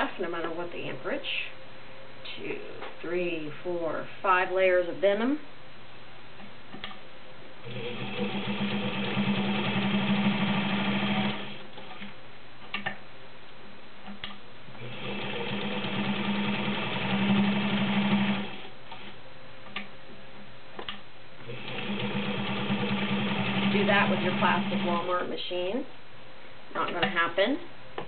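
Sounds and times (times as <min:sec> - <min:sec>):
sewing machine stitching: 0:07.6 - 0:11.6, 0:14.8 - 0:19.1, 0:21.4 - 0:25.2.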